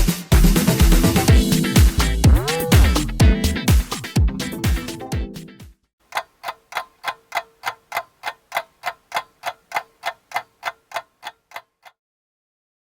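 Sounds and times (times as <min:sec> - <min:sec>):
clock-like ticking: 0:00.4 - 0:04.0, 0:06.1 - 0:12.0.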